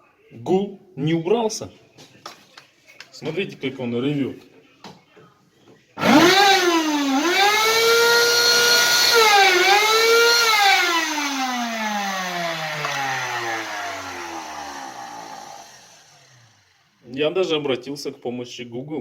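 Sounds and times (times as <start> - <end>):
vacuum cleaner motor whining: 6.0 - 17.0.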